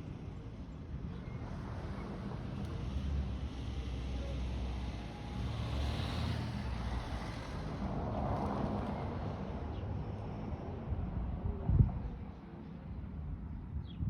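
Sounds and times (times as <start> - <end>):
outdoor noise: 0.0 - 14.0
wind rumbling on microphone: 11.0 - 12.3.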